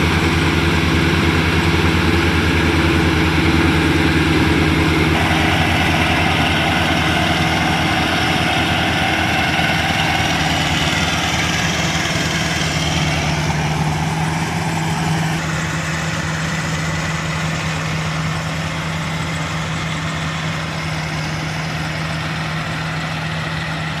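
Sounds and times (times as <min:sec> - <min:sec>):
harvester engine running: 0:00.0 - 0:24.0.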